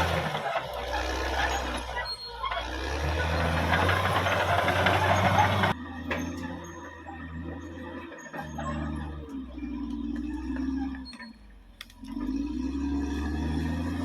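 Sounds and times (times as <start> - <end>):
rattling clatter: 0.0 - 9.4
bulldozer diesel engine: 0.0 - 14.0.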